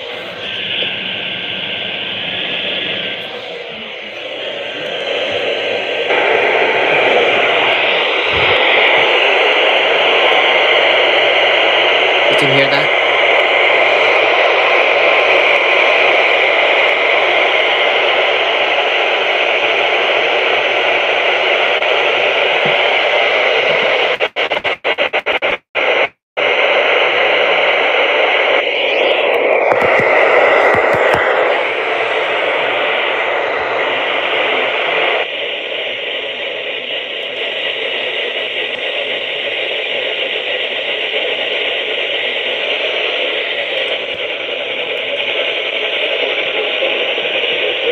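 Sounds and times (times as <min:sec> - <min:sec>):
radio static hiss: 0:00.0 - 0:47.9.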